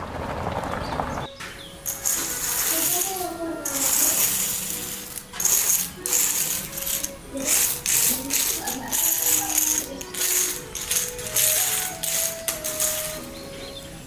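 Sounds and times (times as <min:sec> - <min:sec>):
background music: 0:01.2 - 0:14.0
rhythmic hissing rattle: 0:01.6 - 0:14.0.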